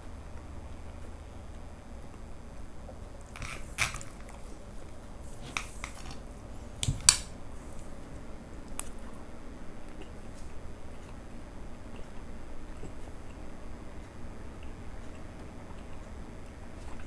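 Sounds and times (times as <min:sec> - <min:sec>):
person chewing: 0:03.2 - 0:07.2.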